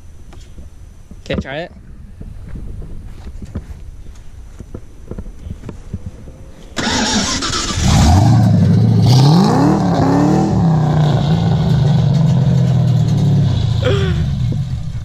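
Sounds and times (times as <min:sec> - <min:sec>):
car engine idling: 0:05.7 - 0:15.0
car engine starting and revving: 0:06.8 - 0:15.0.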